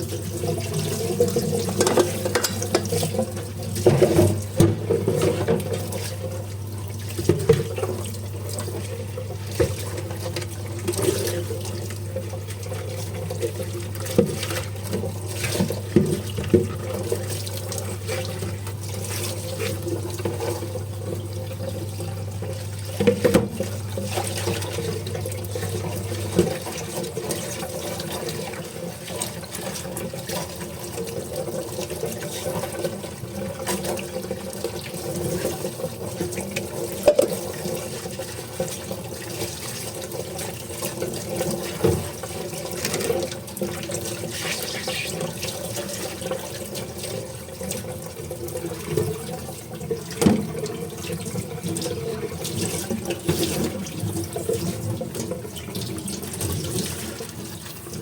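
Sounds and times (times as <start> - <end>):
tap water running into sink: 0.0 - 58.0
dishes clinking: 1.8 - 3.0, 37.1 - 37.4.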